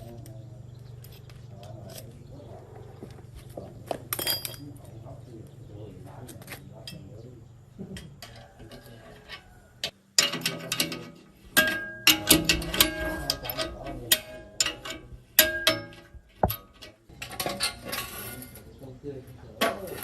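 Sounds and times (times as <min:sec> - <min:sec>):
metal tools clinking and knocking: 0:03.8 - 0:05.2, 0:06.2 - 0:18.8, 0:19.6 - 0:20.0.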